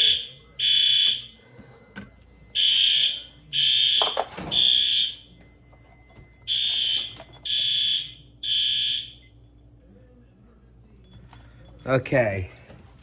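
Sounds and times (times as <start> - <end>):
fire alarm beeping: 0.0 - 9.5.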